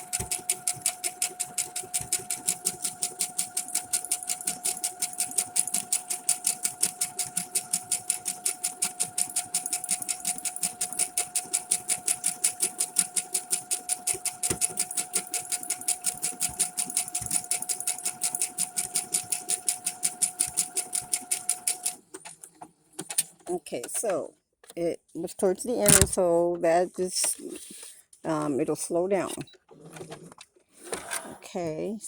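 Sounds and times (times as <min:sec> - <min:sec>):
sewing machine motor whine: 0:00.0 - 0:22.0
sewing machine needle strokes: 0:00.0 - 0:22.0, 0:25.8 - 0:26.2.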